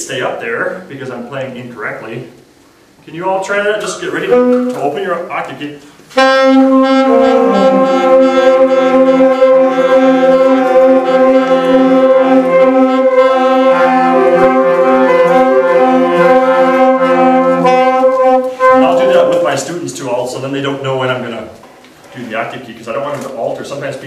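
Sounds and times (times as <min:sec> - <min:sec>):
saxophones holding a long tone: 0:04.0 - 0:05.2, 0:06.1 - 0:20.4.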